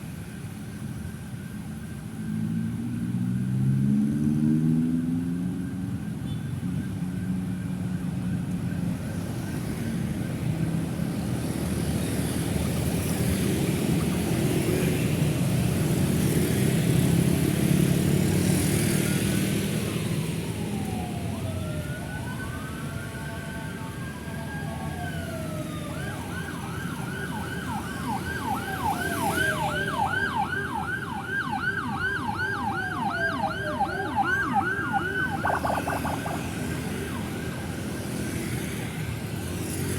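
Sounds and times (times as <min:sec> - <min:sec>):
wailing siren: 0:19.0 - 0:38.2
fast yelping siren: 0:27.6 - 0:37.6.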